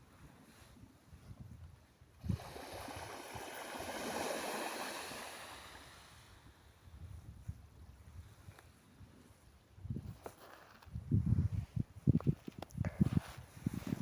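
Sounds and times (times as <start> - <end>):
sea wave breaking on shore: 2.2 - 6.4
hissing wash of wave: 2.3 - 6.3.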